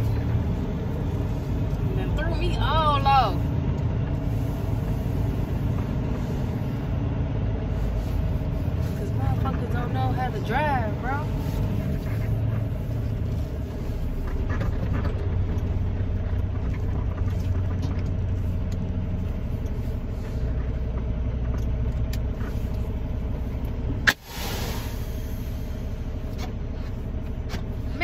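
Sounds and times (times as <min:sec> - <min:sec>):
truck engine rumble: 0:00.0 - 0:28.0
short burst of hiss: 0:24.1 - 0:25.6.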